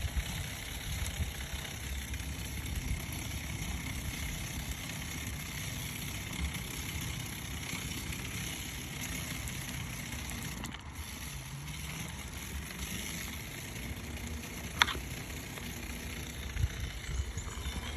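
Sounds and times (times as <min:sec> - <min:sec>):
bicycle gear hub whirring: 0:00.0 - 0:17.9.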